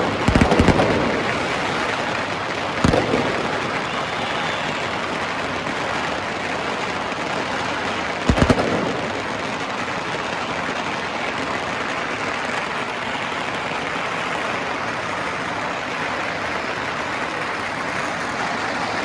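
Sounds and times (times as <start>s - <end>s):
loud close firework bangs: 0.0s - 13.0s
firecrackers crackling and popping: 0.0s - 19.0s.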